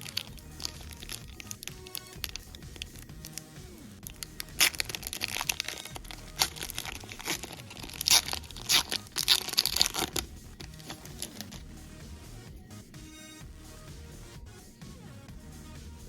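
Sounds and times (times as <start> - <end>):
foil wrapper tearing and crinkling: 0.0 - 3.0, 4.0 - 11.6.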